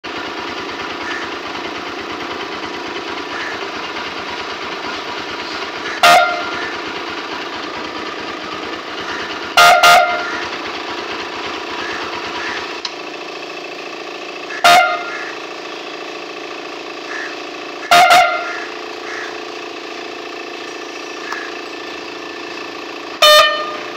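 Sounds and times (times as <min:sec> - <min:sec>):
engine running: 0:00.0 - 0:23.9
air horn blasts: 0:05.9 - 0:06.7, 0:09.5 - 0:10.5, 0:14.5 - 0:15.3, 0:17.1 - 0:19.2, 0:23.2 - 0:23.9.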